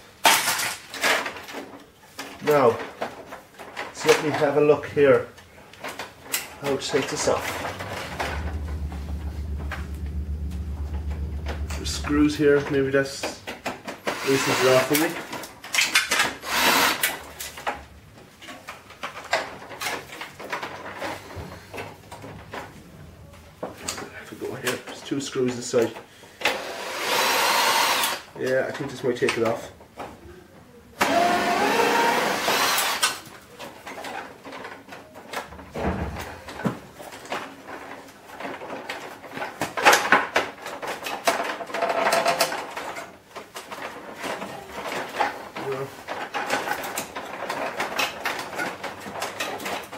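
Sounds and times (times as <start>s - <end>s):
clicks and knocks of printer parts: 33.6s - 49.9s.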